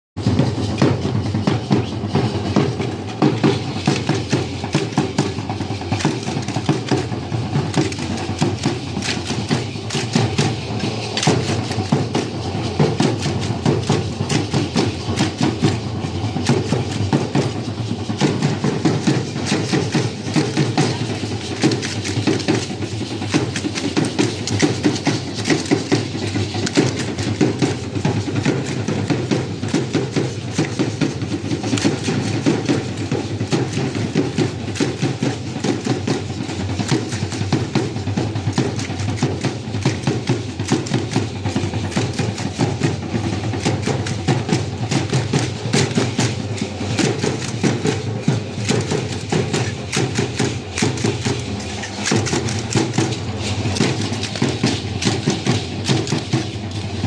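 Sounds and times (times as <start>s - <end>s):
drum beating fast rhythm: 0.2s - 57.0s
sharp wooden clacks: 48.6s - 56.5s.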